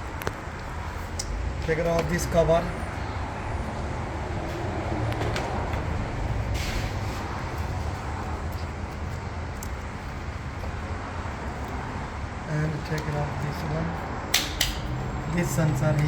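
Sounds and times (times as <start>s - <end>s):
brief scrape: 6.6s - 7.3s.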